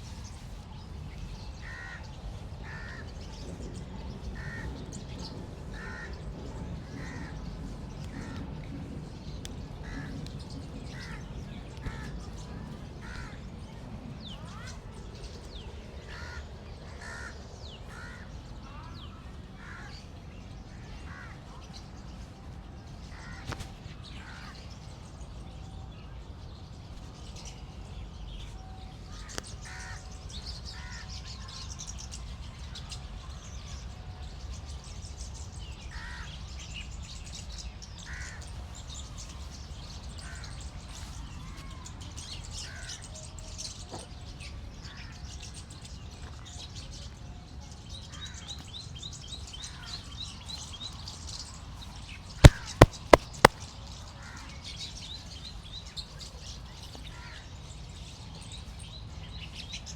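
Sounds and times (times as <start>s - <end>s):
crows cawing: 1.6s - 2.0s, 2.6s - 3.0s, 4.4s - 4.7s, 5.8s - 6.1s, 17.0s - 18.2s
small birds chirping: 52.4s - 53.6s.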